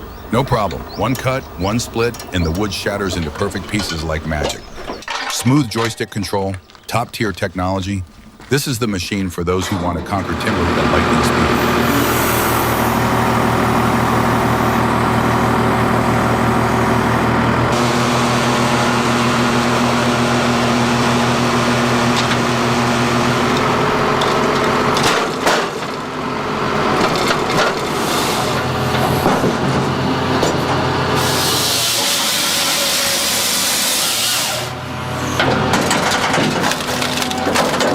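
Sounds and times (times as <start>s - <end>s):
firewood processor running: 0.0s - 6.0s, 9.8s - 37.9s
wood cracking sharply: 35.5s - 37.9s.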